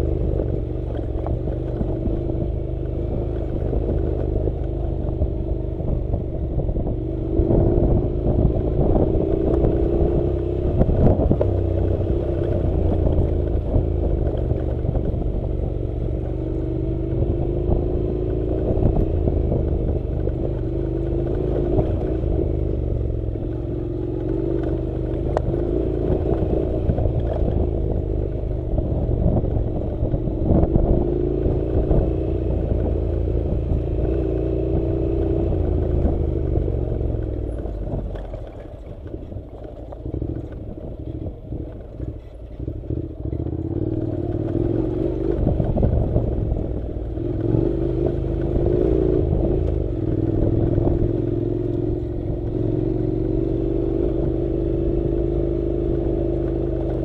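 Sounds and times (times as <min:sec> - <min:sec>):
motorcycle engine at low revs: 0:00.0 - 0:57.0
rumble from rough dirt road: 0:00.0 - 0:57.0.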